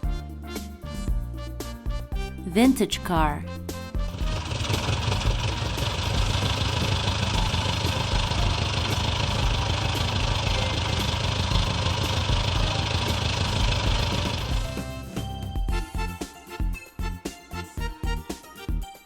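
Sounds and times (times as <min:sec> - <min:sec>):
car engine idling: 0:04.1 - 0:14.7.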